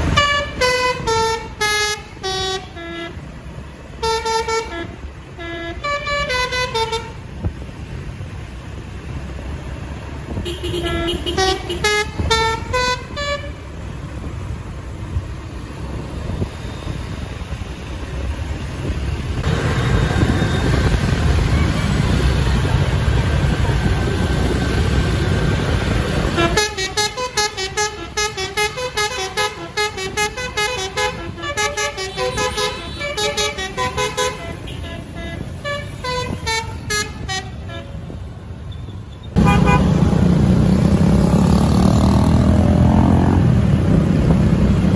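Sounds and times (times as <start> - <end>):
loud vehicle rumble: 0.0 - 44.9
musical air horn melody: 0.1 - 3.2, 4.0 - 7.2, 10.5 - 13.6, 26.3 - 37.9, 39.4 - 40.2.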